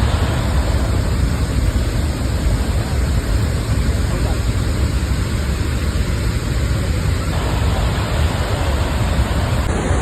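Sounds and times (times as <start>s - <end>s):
waterfall rushing: 7.3s - 10.0s.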